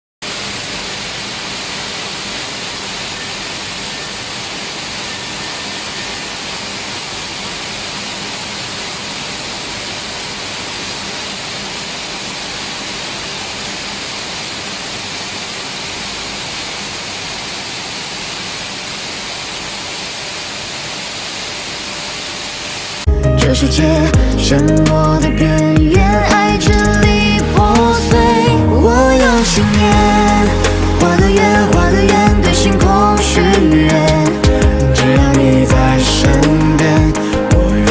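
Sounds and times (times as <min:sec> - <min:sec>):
milling machinery rushing noise: 0:24.7 - 0:37.9.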